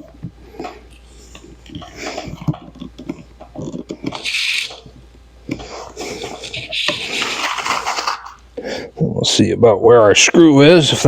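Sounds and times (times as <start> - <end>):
short scrape: 7.0 - 8.4.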